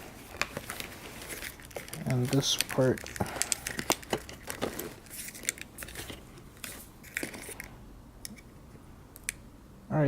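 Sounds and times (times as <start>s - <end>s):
plastic parts clicking and rustling: 0.0s - 7.7s.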